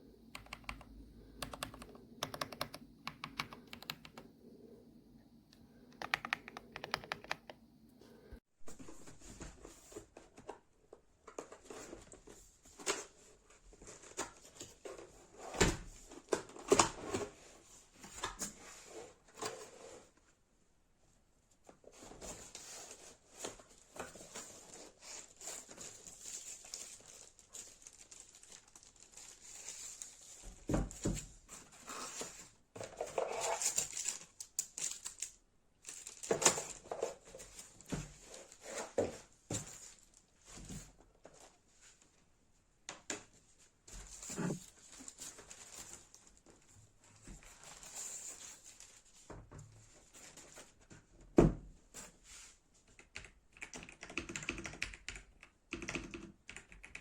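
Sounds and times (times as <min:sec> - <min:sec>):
packaging crinkling: 0:25.6 - 0:30.5, 0:33.4 - 0:36.8.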